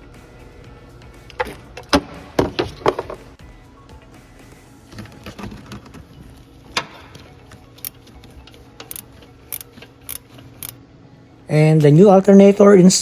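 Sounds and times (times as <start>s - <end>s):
hand tools clicking on metal: 6.7s - 10.8s.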